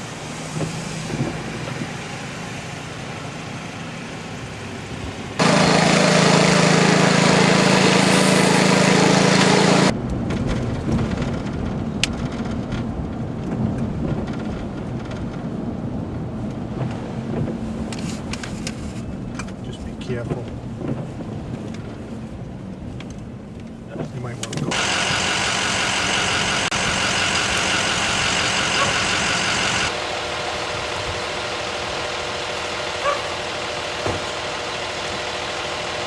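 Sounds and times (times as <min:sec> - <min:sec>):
storm rumble with low hum: 0:00.0 - 0:05.5, 0:09.9 - 0:36.0
loud rush of noise: 0:00.0 - 0:10.0.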